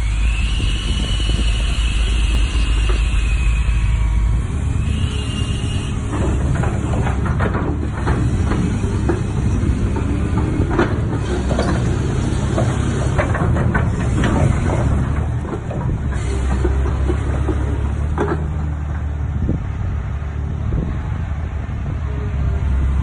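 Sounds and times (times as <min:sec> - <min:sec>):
excavator diesel engine running: 0:00.0 - 0:23.0
short knocks and clanks: 0:06.0 - 0:19.1.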